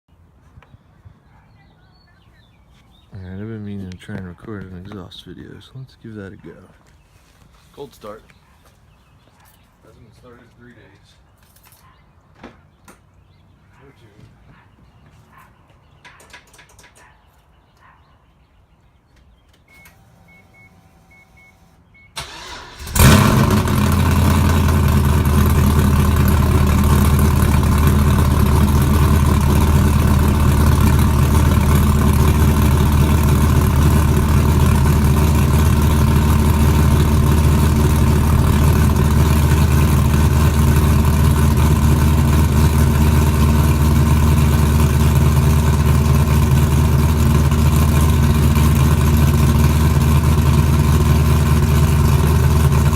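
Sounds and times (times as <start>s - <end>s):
starter motor cranking: 22.2s - 40.8s
car engine idling: 22.2s - 52.9s.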